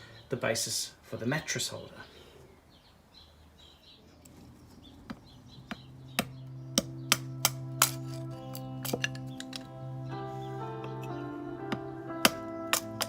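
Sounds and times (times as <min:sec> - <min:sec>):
music with percussive hits: 0:05.7 - 0:09.8, 0:10.8 - 0:13.0.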